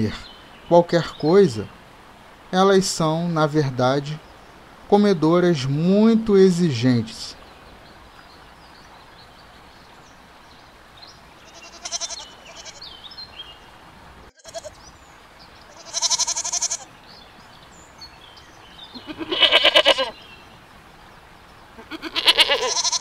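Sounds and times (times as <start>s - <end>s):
goats bleating: 11.4s - 12.9s, 14.4s - 14.8s, 15.7s - 16.9s, 18.9s - 20.2s, 21.8s - 23.0s.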